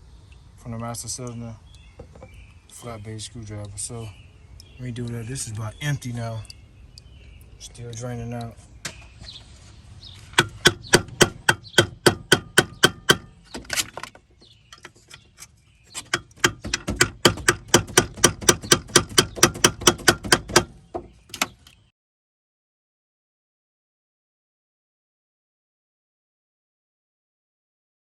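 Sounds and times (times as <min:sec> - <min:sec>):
hammer tapping on screwdriver: 0:10.4 - 0:13.3, 0:16.0 - 0:21.5.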